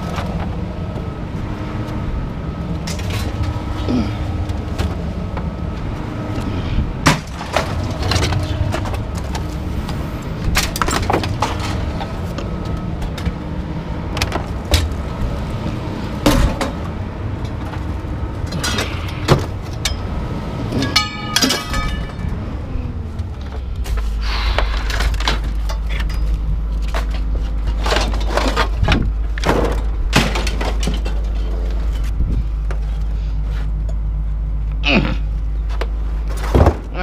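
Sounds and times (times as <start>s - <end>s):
steady low rumble: 0.0s - 37.0s
metal clinks and knocks: 20.7s - 22.4s, 24.7s - 32.2s.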